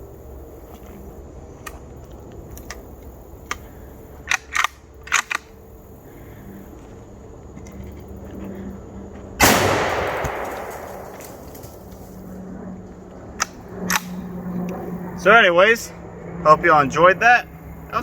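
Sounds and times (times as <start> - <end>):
low background noise: 0.0 - 18.0
faint clicks: 1.6 - 5.6.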